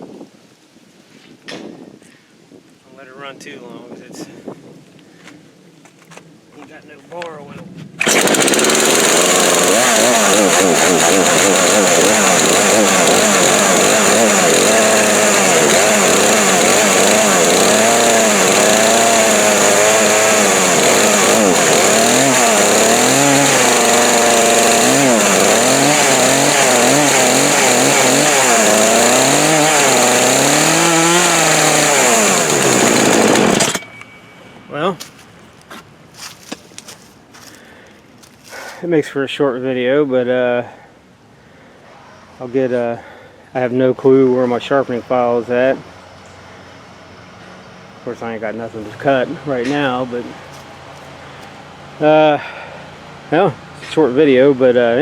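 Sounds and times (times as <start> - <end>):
chainsaw revving: 8.0 - 33.9.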